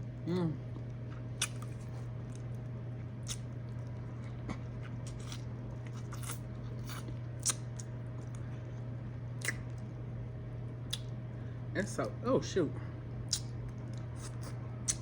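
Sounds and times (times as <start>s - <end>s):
steady low hum: 0.0s - 15.0s
chewing and wet mouth smacking: 0.7s - 8.6s, 9.4s - 9.9s, 10.9s - 11.1s, 13.3s - 15.0s
sharp mouth clicks: 13.3s - 13.5s.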